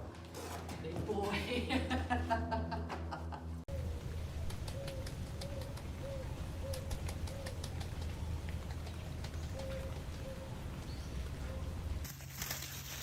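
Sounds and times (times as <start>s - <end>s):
steady low hum: 0.0s - 12.1s
bird calling: 3.7s - 12.0s
light clicks: 6.6s - 10.2s.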